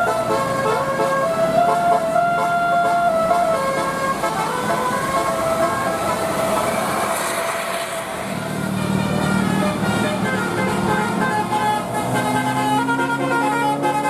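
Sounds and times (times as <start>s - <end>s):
multi-tone bus horn melody: 0.0s - 14.0s
vehicle noise: 0.0s - 14.0s.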